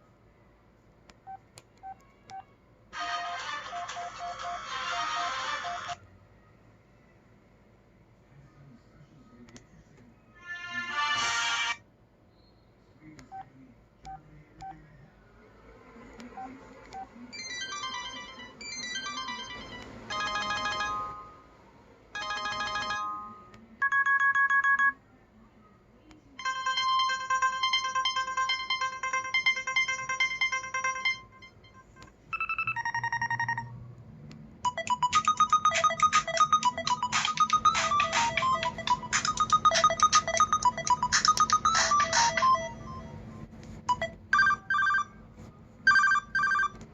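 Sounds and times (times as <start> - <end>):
electronic phone ringtones: 17.4 - 21.4, 22.2 - 25.0, 26.4 - 33.8, 34.6 - 45.2, 45.9 - 46.8.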